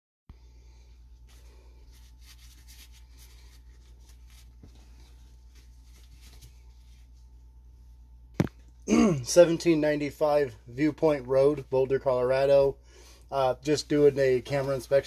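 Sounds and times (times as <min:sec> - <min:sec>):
electrical hum with high tone: 0:00.3 - 0:15.0
rubbing and scraping: 0:01.2 - 0:07.2.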